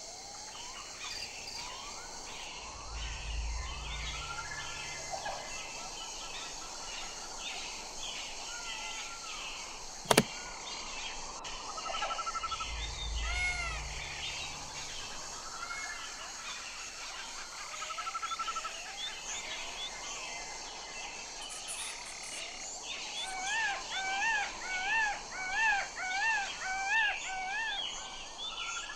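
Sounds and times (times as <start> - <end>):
sharp click: 10.0 - 10.4.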